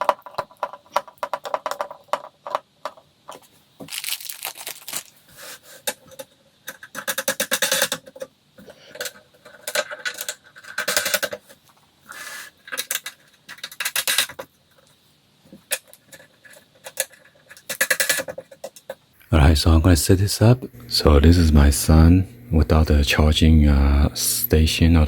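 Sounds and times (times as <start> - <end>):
rapid clicking and scraping: 15.6 - 19.1.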